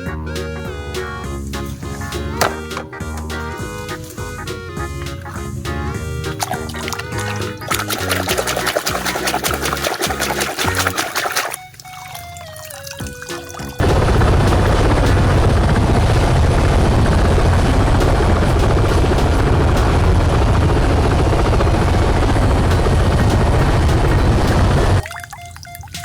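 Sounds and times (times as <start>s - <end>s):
mechanical whirring drone: 13.8s - 25.0s.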